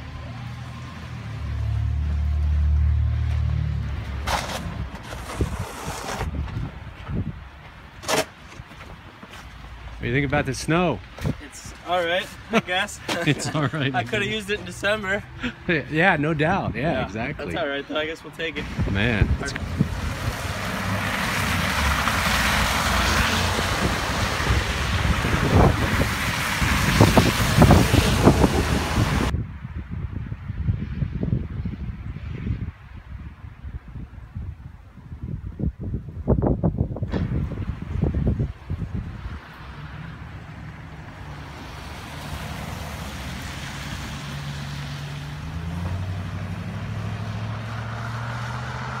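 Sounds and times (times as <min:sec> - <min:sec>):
short irregular noises: 0:04.2 - 0:06.6
wind buffeting microphone: 0:04.8 - 0:07.8, 0:18.6 - 0:21.0, 0:23.5 - 0:39.7.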